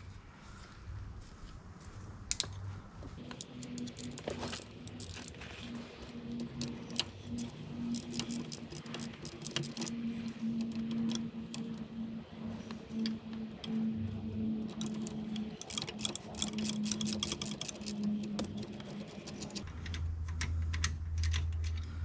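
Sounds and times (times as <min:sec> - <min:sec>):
metal tools clinking on metal: 0:03.2 - 0:11.8, 0:14.6 - 0:19.6.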